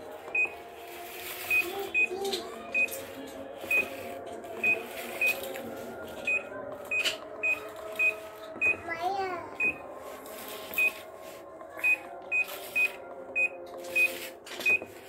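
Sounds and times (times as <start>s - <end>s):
washing machine beeps: 0.3s - 0.6s, 1.5s - 4.0s, 4.6s - 5.5s, 6.2s - 8.8s, 9.6s - 9.8s, 10.7s - 11.0s, 11.8s - 15.0s.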